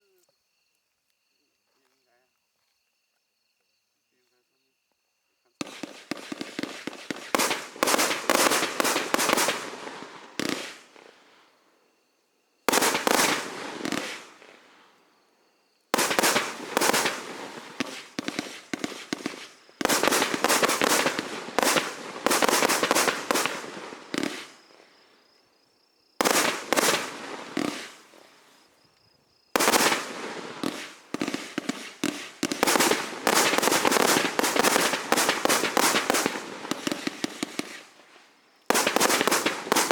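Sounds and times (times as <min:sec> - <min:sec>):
fireworks cracking: 0:05.6 - 0:11.5, 0:12.7 - 0:15.2, 0:15.9 - 0:25.0, 0:26.2 - 0:28.7, 0:29.5 - 0:39.9.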